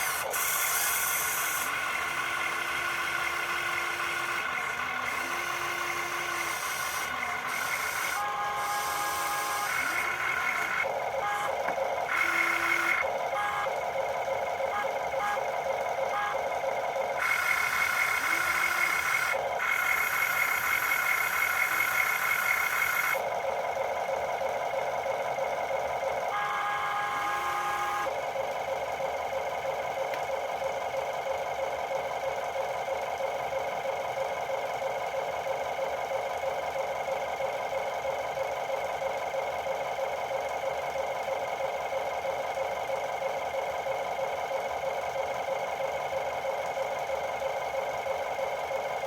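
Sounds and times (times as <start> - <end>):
toy vehicle whirring buzz: 0.0 - 13.8, 17.2 - 23.3, 26.3 - 28.1.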